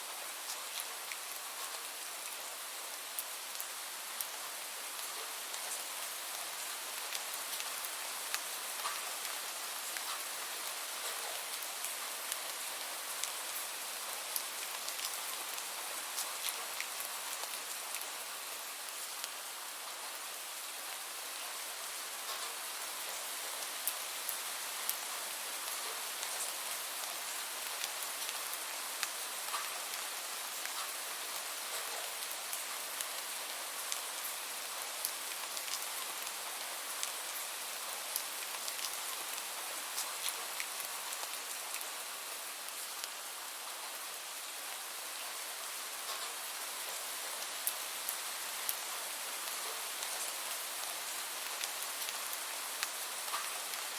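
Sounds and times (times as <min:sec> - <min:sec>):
steady rain hissing: 0:00.0 - 0:53.9
raindrops pattering: 0:00.2 - 0:20.1, 0:22.2 - 0:43.2, 0:44.9 - 0:53.9.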